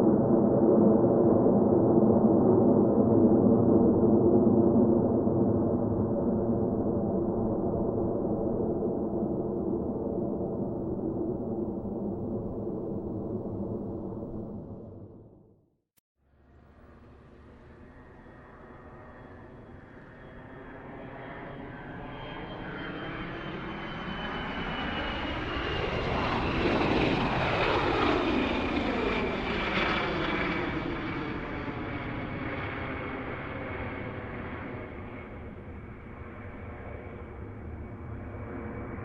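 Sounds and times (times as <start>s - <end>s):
airplane flying past: 16.3s - 39.0s.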